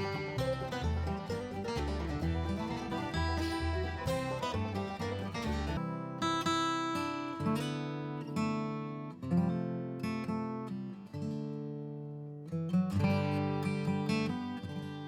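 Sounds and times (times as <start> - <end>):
acoustic guitar strumming chords: 0.0 - 7.0.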